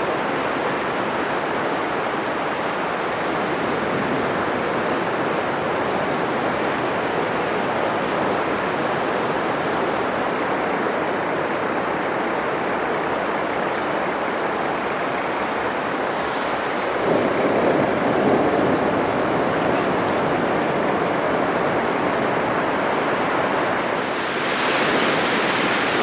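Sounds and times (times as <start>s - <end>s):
surf breaking on sandy beach: 9.7s - 26.0s.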